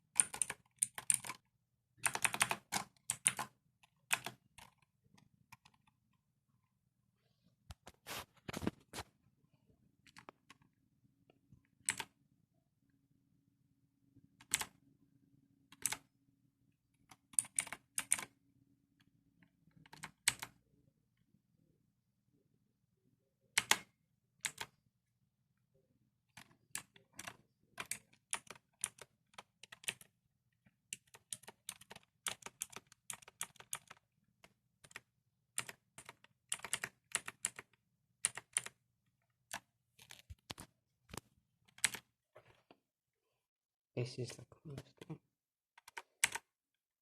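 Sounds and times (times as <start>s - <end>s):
mechanical keyboard typing: 0.1s - 4.9s, 5.5s - 5.9s, 11.8s - 12.1s, 14.4s - 14.8s, 15.7s - 16.1s, 17.1s - 18.4s, 19.7s - 20.6s, 23.6s - 24.7s, 26.3s - 30.1s, 30.9s - 38.8s, 39.5s - 42.1s, 45.8s - 46.5s.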